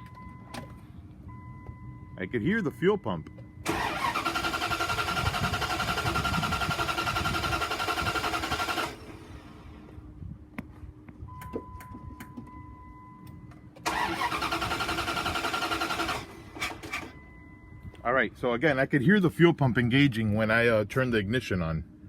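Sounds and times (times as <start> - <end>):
engine cranking on starter: 3.6 - 9.6, 13.8 - 17.2.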